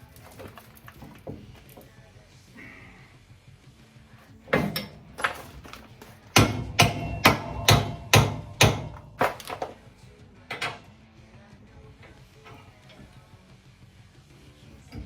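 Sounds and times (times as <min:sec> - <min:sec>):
hammer blows: 0:06.3 - 0:09.6.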